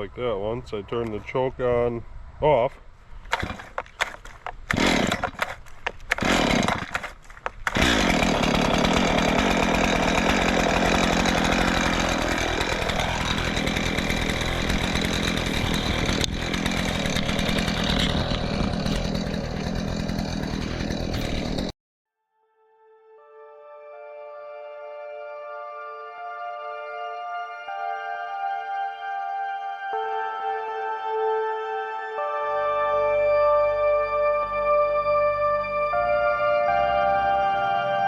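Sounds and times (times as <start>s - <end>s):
chainsaw starting and running: 3.3s - 21.7s.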